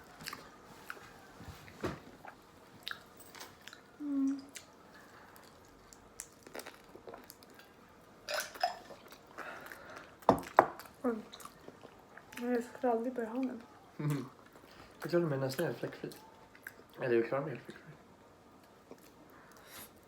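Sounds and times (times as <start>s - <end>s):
chewing and biting pizza: 2.2s - 7.8s.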